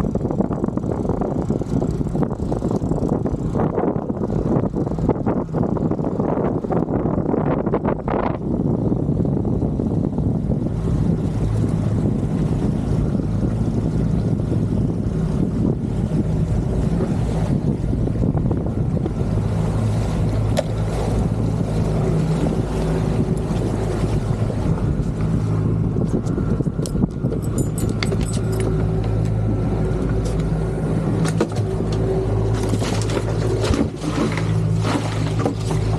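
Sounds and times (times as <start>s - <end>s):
wind rushing: 0.0s - 27.6s
boat engine humming: 0.0s - 35.9s.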